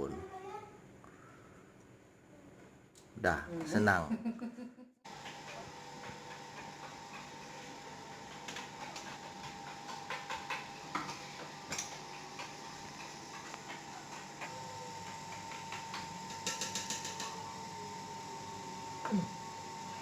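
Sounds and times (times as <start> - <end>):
refrigerator humming: 5.1 - 20.0.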